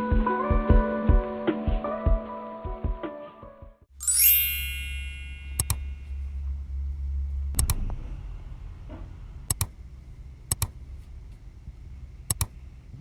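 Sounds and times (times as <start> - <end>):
chime ringing: 4.0 - 6.2
steady low hum: 4.9 - 13.0
sharp double clicks: 5.6 - 5.9, 7.5 - 7.9, 9.5 - 9.8, 10.5 - 10.8, 12.3 - 12.6.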